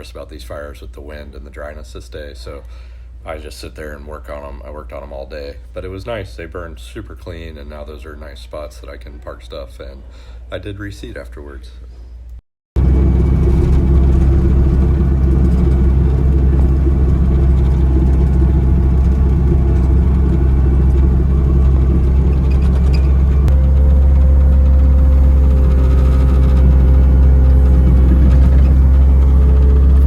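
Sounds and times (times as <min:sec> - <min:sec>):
heavy equipment engine humming: 0:12.8 - 0:30.0
higher tone: 0:12.8 - 0:30.0.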